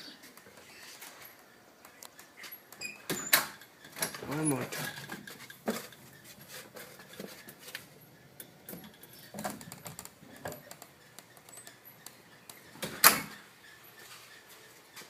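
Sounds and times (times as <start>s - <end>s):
door closer clicks and creaks: 1.9s - 6.0s, 8.4s - 13.5s.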